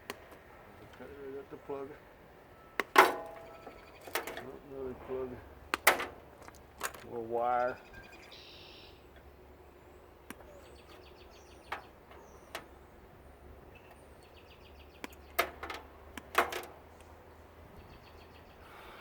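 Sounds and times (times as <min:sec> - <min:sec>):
tools clicking and knocking: 0:15.0 - 0:16.8.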